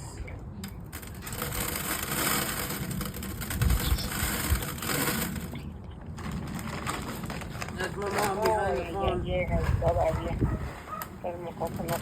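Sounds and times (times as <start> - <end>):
dry seeds rattling and rustling: 0.8 - 9.0.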